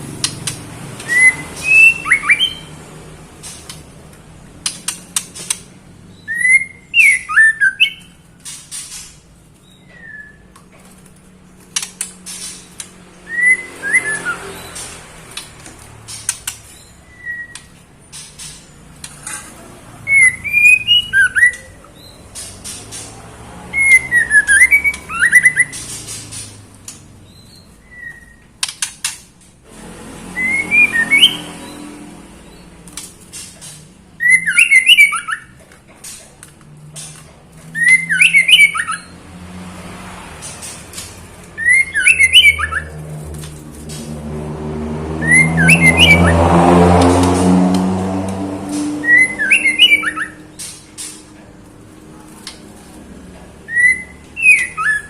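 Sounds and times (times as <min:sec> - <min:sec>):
bird whistled calls: 0:01.0 - 0:02.7, 0:06.1 - 0:08.1, 0:09.7 - 0:10.4, 0:13.2 - 0:14.7, 0:17.0 - 0:17.8, 0:20.1 - 0:22.2, 0:23.7 - 0:25.9, 0:27.5 - 0:28.5, 0:30.4 - 0:31.5, 0:34.2 - 0:35.5, 0:37.8 - 0:39.1, 0:41.6 - 0:42.9, 0:45.2 - 0:46.3, 0:49.0 - 0:50.6, 0:53.7 - 0:55.0.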